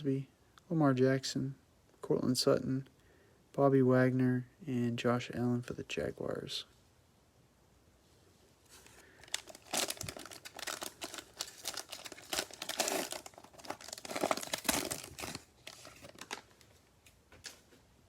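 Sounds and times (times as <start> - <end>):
cellophane wrapper crackling: 9.0 - 16.8.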